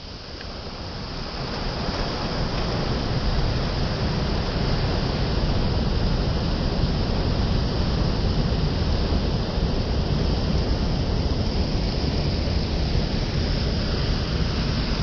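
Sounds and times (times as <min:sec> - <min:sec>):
sea rushing: 0:00.0 - 0:15.0.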